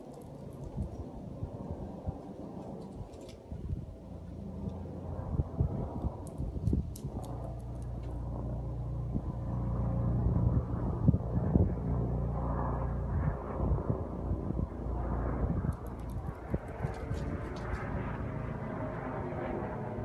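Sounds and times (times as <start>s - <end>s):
distant helicopter rotor drone: 0.0s - 20.0s.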